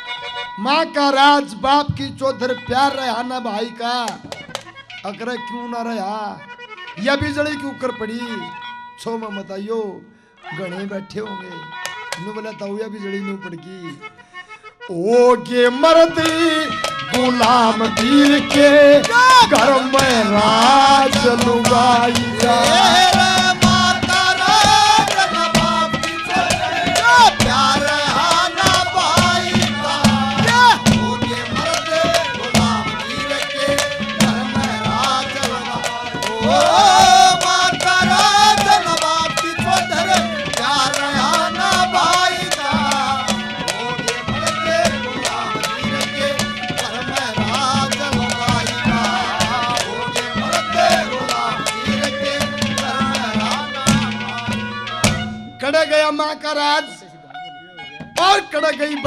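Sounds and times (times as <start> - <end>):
hand drums beat: 4.0 - 4.8, 15.9 - 55.6, 58.0 - 59.0
wavering melodic line: 17.0 - 59.0.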